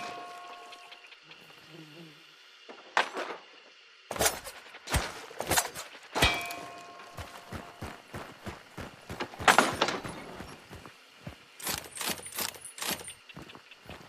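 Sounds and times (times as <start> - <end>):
knives hitting metal with clangs: 5.6 - 6.9.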